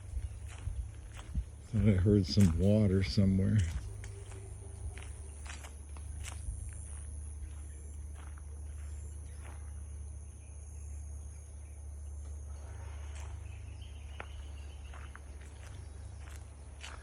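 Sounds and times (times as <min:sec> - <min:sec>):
wind rustling tree leaves: 0:00.0 - 0:07.0
insects droning: 0:00.0 - 0:17.0.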